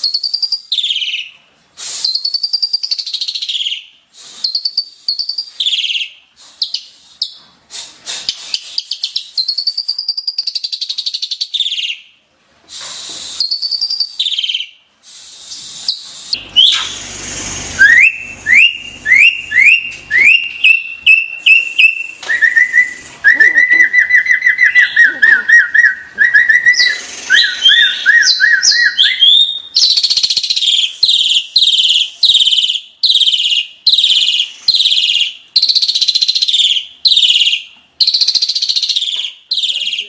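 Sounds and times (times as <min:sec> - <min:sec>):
starling singing whistled notes: 0:00.0 - 0:01.4, 0:02.0 - 0:07.4, 0:08.3 - 0:12.1, 0:13.2 - 0:14.8, 0:15.4 - 0:17.1, 0:17.8 - 0:40.0
harsh grating bird calls: 0:12.8 - 0:40.0.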